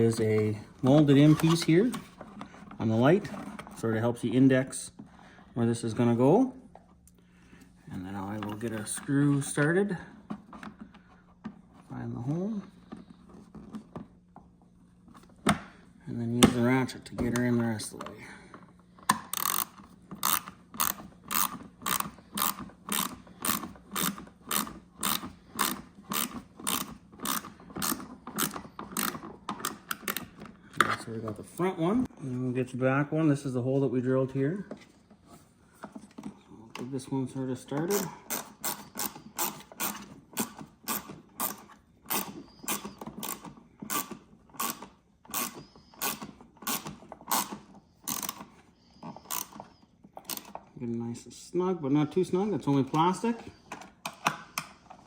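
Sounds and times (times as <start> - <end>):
ratchet pawl clicking: 19.3 - 30.2, 38.0 - 48.4, 49.2 - 49.6.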